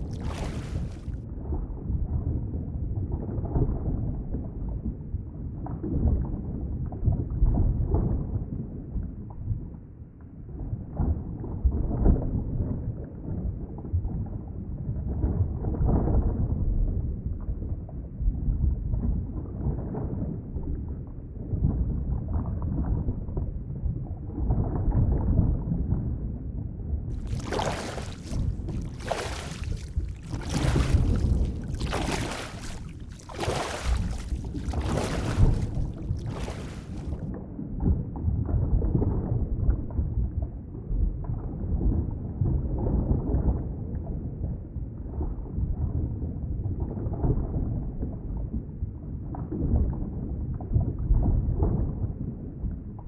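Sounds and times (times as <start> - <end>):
faint crackles: 27.1 - 37.2
muffled underwater rumble: 27.2 - 37.2.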